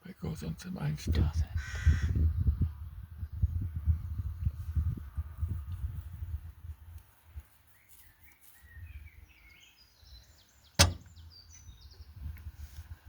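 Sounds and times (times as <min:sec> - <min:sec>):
sharp click: 0:10.8 - 0:11.3.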